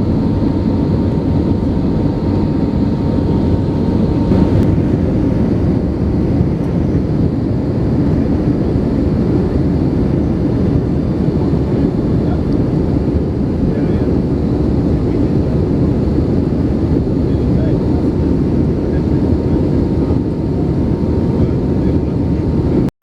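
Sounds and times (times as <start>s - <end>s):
jet engine cabin rumble: 0.0s - 22.9s.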